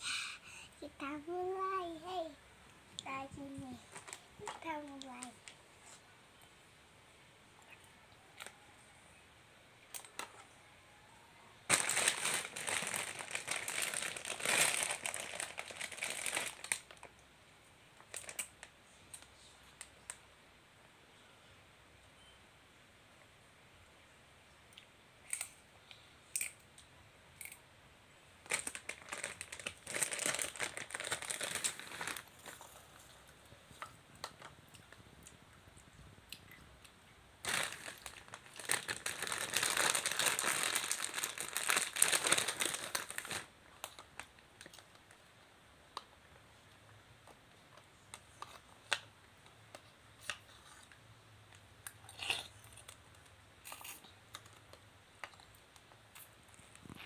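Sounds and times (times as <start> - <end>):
plastic packaging crinkling: 3.0 - 5.6, 11.7 - 17.1, 18.0 - 18.7, 28.4 - 35.0, 37.4 - 45.2.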